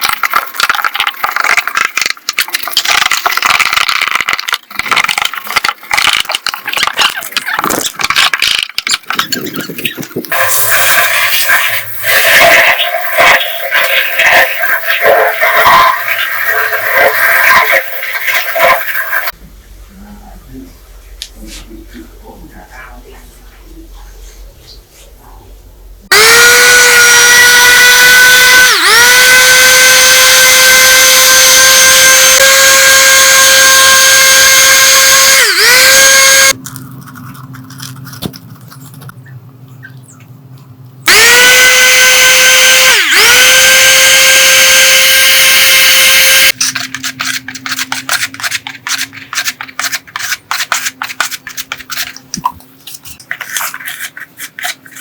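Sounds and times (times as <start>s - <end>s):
scraping and clicking: 0.0s - 11.6s, 26.2s - 39.3s, 41.1s - 55.0s
electric power tool whining: 26.1s - 36.6s, 41.1s - 46.6s.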